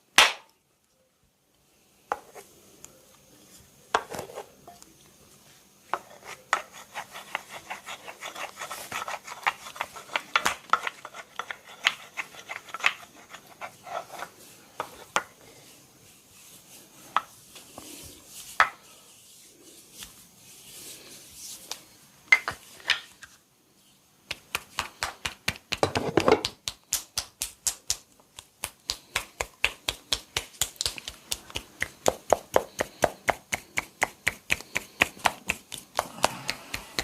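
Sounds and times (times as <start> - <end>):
rapid hand slaps: 0.2 - 0.5, 24.3 - 37.0
hands rubbing skin: 26.4 - 37.0.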